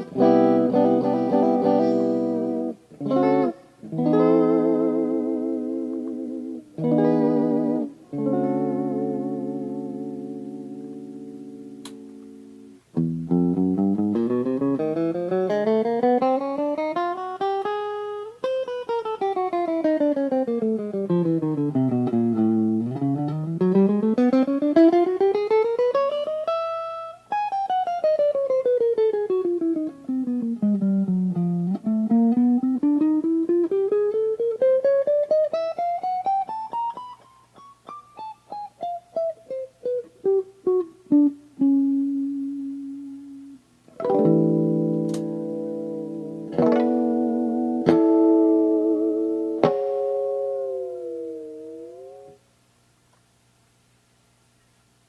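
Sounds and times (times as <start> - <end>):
electric guitar fast repeated notes: 0.0 - 10.8.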